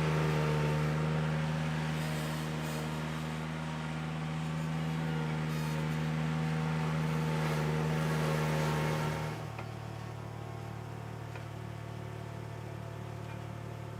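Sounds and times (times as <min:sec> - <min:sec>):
stump grinder rushing noise: 0:00.0 - 0:13.9.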